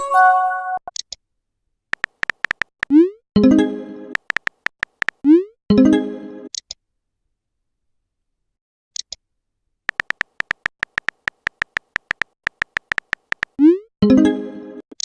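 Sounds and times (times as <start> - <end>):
keyboard tap clicks: 2.0 - 2.9, 4.2 - 5.2, 9.9 - 13.6.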